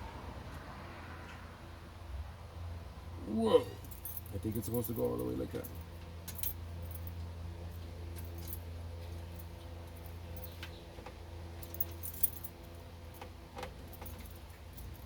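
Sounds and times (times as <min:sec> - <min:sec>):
keys jingling: 0:03.8 - 0:07.1, 0:11.6 - 0:12.6.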